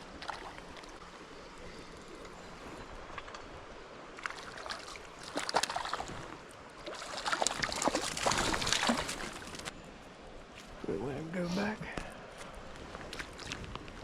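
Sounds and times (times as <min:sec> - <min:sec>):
creek water running: 0:00.0 - 0:09.8
water splashing and sloshing: 0:00.0 - 0:09.8, 0:12.0 - 0:14.0.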